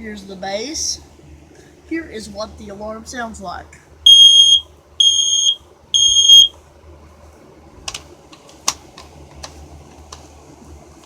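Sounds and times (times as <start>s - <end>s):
smoke alarm beeping: 4.1s - 6.6s.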